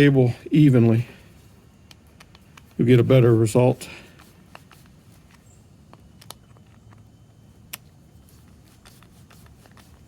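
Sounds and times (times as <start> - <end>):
low steady hum: 0.0 - 10.0
faint clicks of small parts: 1.8 - 2.8, 4.1 - 10.0.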